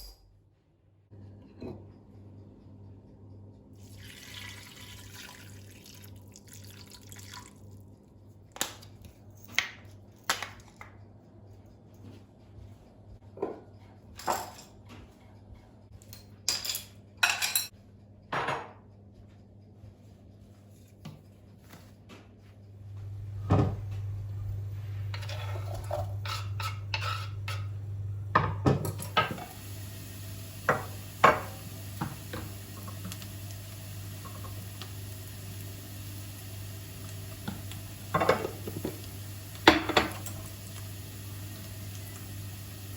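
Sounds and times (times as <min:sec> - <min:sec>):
dishes and cutlery clinking: 0:13.3 - 0:15.3, 0:16.0 - 0:18.9, 0:25.1 - 0:27.8, 0:37.5 - 0:40.5
steady low hum: 0:17.8 - 0:42.9.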